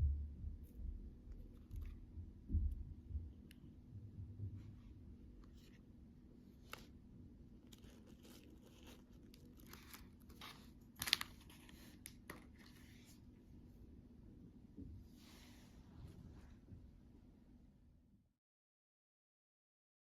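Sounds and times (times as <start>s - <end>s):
candy wrapper tearing and crinkling: 7.7s - 12.4s.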